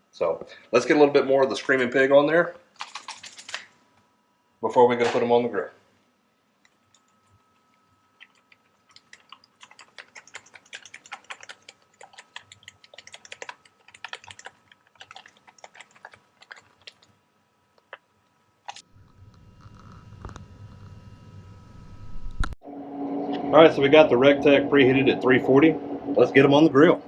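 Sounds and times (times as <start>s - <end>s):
seasoning shaker ticking: 6.9s - 17.1s.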